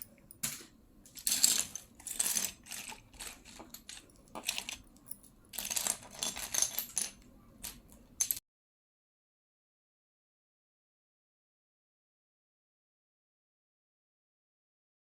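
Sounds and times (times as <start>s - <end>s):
plastic blocks clattering: 0.4s - 4.9s, 5.5s - 8.4s.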